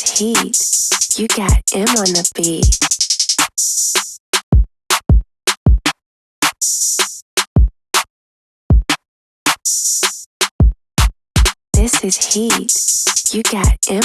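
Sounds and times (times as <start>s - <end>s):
syncopated drum hits: 1.4s - 2.9s.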